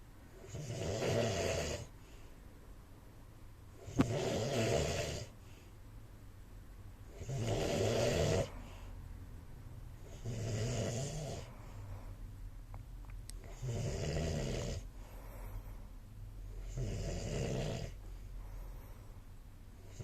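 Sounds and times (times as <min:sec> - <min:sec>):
man snoring: 0:00.4 - 0:01.9, 0:03.8 - 0:05.3, 0:07.1 - 0:08.6, 0:10.0 - 0:11.5, 0:13.4 - 0:14.9, 0:16.5 - 0:18.0.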